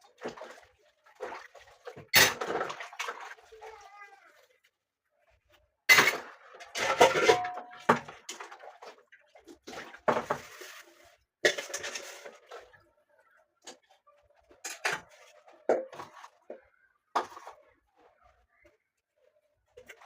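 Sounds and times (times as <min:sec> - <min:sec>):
dishes and pots clattering: 0:01.2 - 0:03.2, 0:05.9 - 0:08.8, 0:09.7 - 0:10.8, 0:11.4 - 0:12.7, 0:14.5 - 0:16.6, 0:17.2 - 0:17.6.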